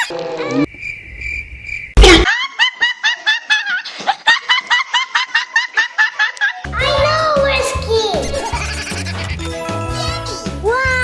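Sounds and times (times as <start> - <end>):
high-pitched snickering laughter: 8.2 - 10.4.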